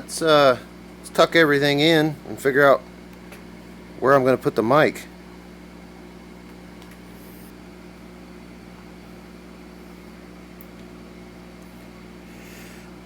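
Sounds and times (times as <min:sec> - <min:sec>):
low room hum: 0:00.0 - 0:13.0.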